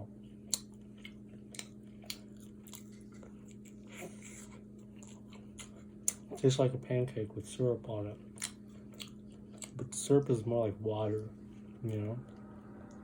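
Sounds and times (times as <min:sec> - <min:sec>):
steady low hum: 0:00.0 - 0:13.0
wet chewing and mouth smacks: 0:00.1 - 0:06.5, 0:08.2 - 0:10.0.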